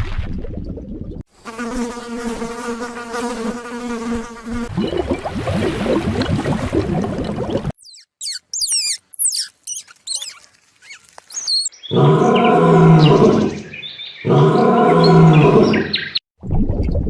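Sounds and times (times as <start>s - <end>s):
animal chirping calls: 7.8s - 16.2s
animal long low calls: 14.3s - 15.9s.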